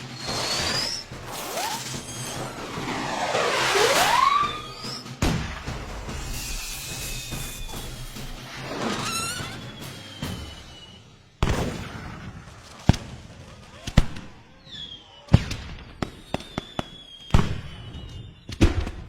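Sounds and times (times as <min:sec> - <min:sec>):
short falling whistle: 0:00.0 - 0:05.2, 0:06.2 - 0:11.4, 0:14.5 - 0:18.6
cartoon firework-like bangs: 0:11.4 - 0:14.3.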